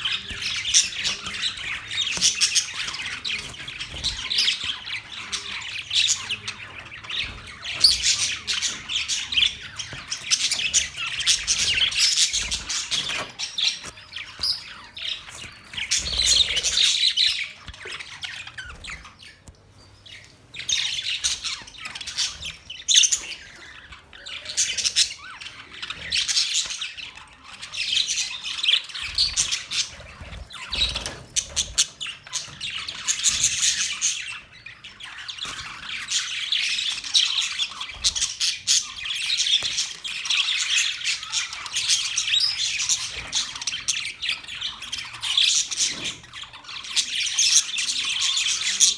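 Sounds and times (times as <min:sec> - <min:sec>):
budgies chirping and warbling: 0:00.0 - 0:48.9.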